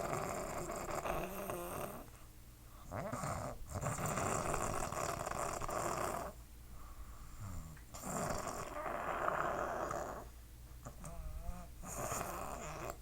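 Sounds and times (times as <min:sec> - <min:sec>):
person snoring: 0:00.0 - 0:02.0, 0:07.4 - 0:10.3.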